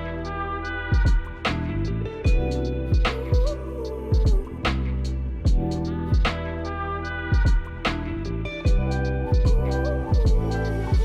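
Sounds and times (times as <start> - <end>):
held bass: 0.0 - 11.0
drum hits: 1.0 - 1.5, 5.5 - 6.4.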